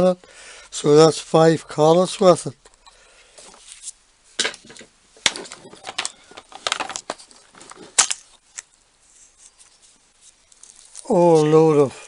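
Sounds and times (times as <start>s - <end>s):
rotary tool accessories clicking and rattling: 4.4s - 8.0s.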